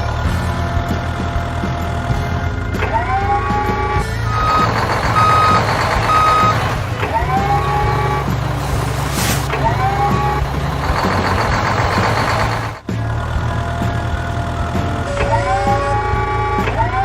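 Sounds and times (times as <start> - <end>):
truck engine running: 0.0 - 17.0
rising whines: 2.4 - 12.9, 14.3 - 17.0
reversing alarm beeps: 3.2 - 8.3.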